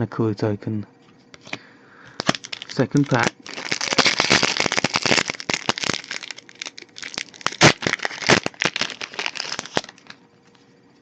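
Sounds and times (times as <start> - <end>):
foil wrapper tearing and crinkling: 1.4 - 10.2.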